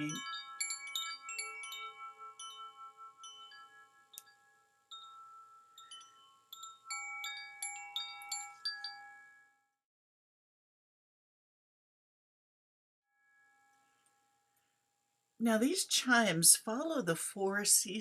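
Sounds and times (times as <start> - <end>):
wind chime ringing: 0.0 - 9.7, 13.2 - 14.8.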